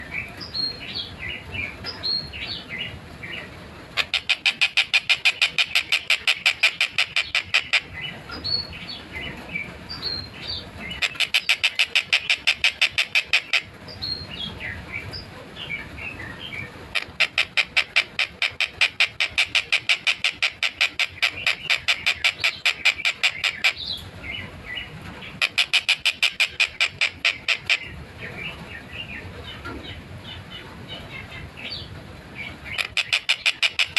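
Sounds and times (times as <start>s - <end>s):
kingfisher rapid repeated calls: 4.0s - 8.0s, 11.0s - 13.7s, 16.9s - 23.8s, 25.3s - 28.0s, 32.8s - 33.9s.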